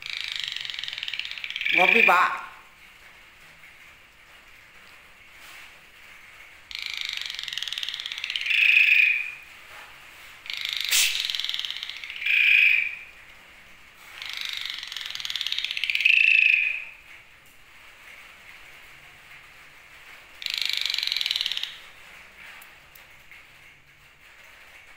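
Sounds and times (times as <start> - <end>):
starling harsh rasping calls: 0.0 - 2.6, 6.7 - 9.4, 10.5 - 13.1, 14.2 - 17.0, 20.4 - 21.8.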